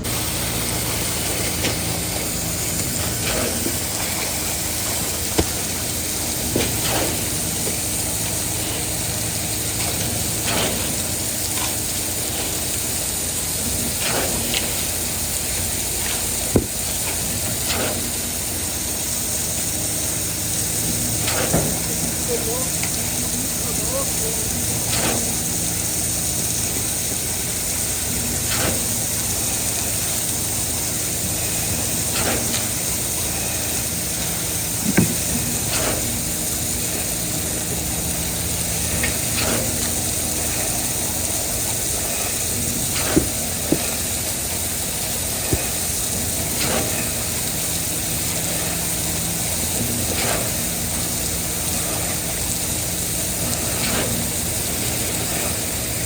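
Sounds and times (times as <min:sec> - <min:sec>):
pump engine humming: 0:00.0 - 0:56.0
pump cylinder knock: 0:05.0 - 0:07.8, 0:16.5 - 0:17.2, 0:34.8 - 0:35.6, 0:43.0 - 0:44.4.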